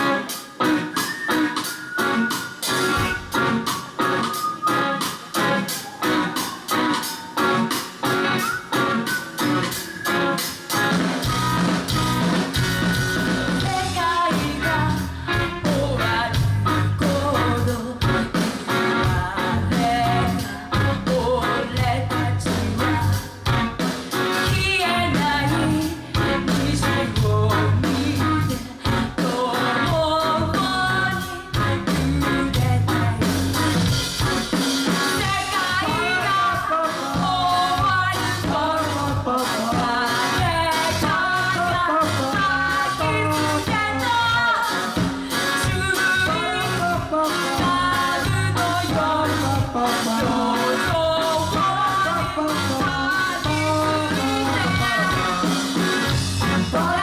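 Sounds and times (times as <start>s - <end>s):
rock band playing: 0.0s - 57.0s
person singing: 13.6s - 23.6s, 24.2s - 33.8s, 34.9s - 57.0s.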